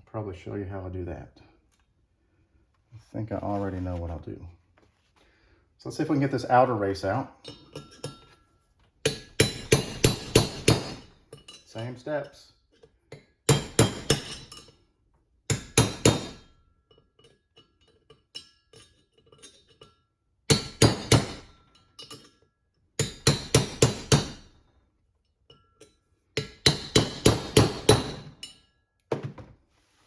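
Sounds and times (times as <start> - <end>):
hammer striking steel punch: 9.1 - 11.1, 13.5 - 14.6, 15.5 - 16.5, 20.5 - 21.6, 23.0 - 24.5, 26.4 - 28.6.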